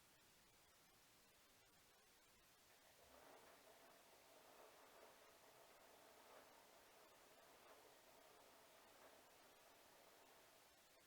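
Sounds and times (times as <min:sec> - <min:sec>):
washing machine running: 0:02.7 - 0:11.0.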